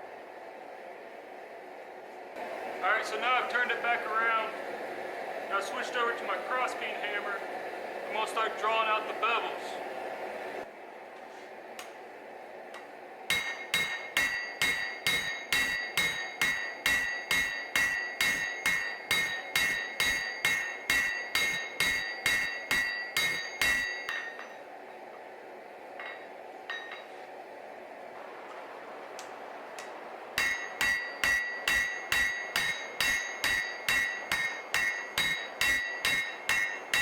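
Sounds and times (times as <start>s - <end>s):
hammer striking steel on anvil: 13.3s - 24.6s, 26.0s - 27.1s, 29.8s - 37.0s.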